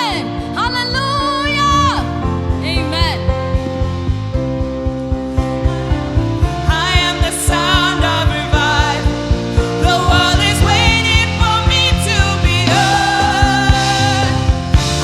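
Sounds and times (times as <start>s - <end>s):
gospel band music: 0.0s - 15.0s
steady drum beat: 2.6s - 15.0s
people singing: 5.4s - 15.0s.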